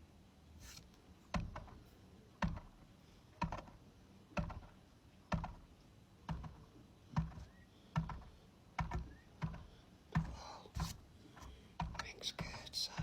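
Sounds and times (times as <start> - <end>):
ball knocking: 1.3 - 1.8, 2.4 - 2.8, 3.4 - 3.8, 4.4 - 5.7, 6.3 - 13.0.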